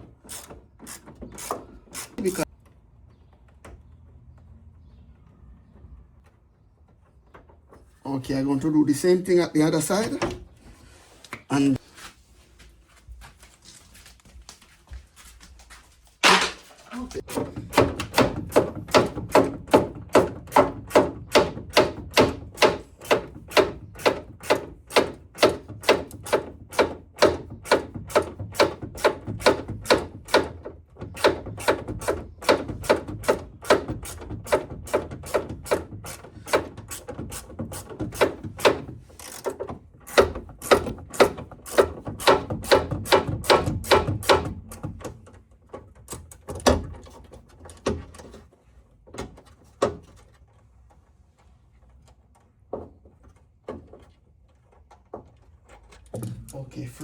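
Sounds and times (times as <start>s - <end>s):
hand ratchet clicking: 0.3s - 2.3s.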